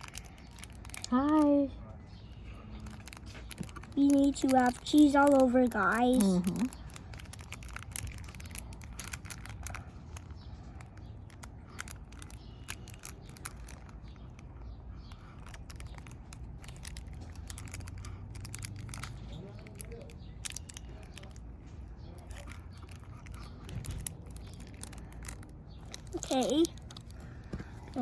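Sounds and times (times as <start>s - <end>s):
hands working slime: 0.0s - 1.3s, 2.9s - 14.1s
small crackling clicks: 0.0s - 1.7s, 2.8s - 28.0s.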